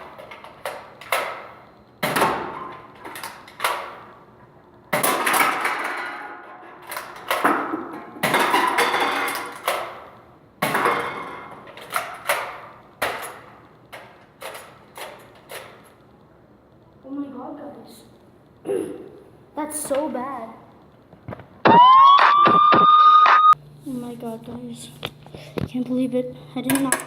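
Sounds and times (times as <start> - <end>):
cans clattering and tumbling: 5.0 - 10.0.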